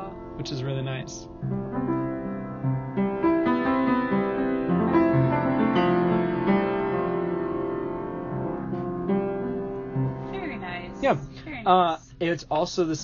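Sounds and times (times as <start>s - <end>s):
piano chords: 0.0s - 11.8s.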